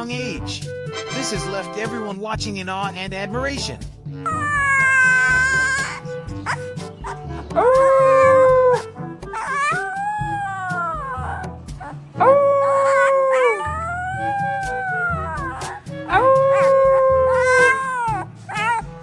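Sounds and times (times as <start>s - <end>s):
huskies howling: 4.3s - 18.9s.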